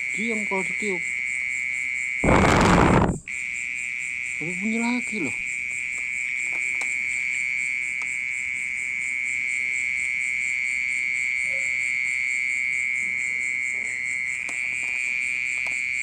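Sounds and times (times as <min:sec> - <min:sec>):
insect buzzing: 0:02.2 - 0:03.2.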